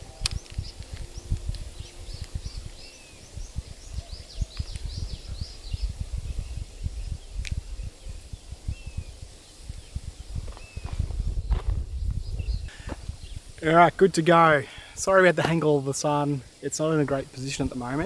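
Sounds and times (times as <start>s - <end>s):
finches chirping: 0.0s - 14.3s
wind buffeting microphone: 0.0s - 15.2s.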